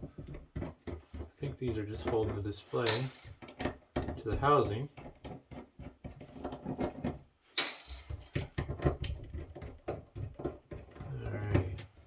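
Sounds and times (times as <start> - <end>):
screwdriver and metal parts clatter: 1.7 - 4.2, 5.3 - 11.0.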